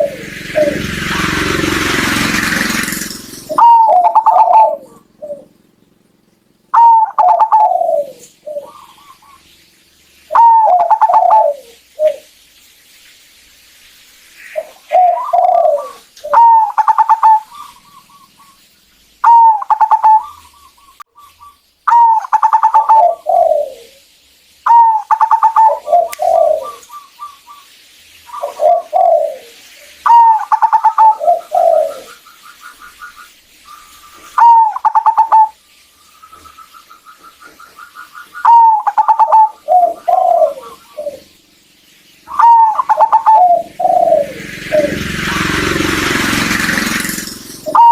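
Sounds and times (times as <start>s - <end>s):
dove cooing: 0.0s - 5.8s, 6.7s - 9.5s, 10.3s - 12.3s, 14.5s - 18.5s, 19.2s - 20.9s, 21.9s - 24.0s, 24.7s - 27.4s, 28.3s - 33.2s, 33.8s - 35.6s, 36.4s - 41.3s, 42.3s - 46.9s, 47.6s - 47.9s.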